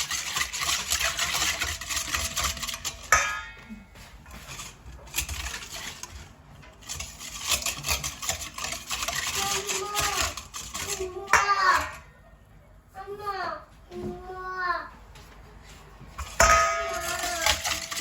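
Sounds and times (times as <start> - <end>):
spoon stirring in a bowl: 0.0 - 12.2, 16.2 - 18.0.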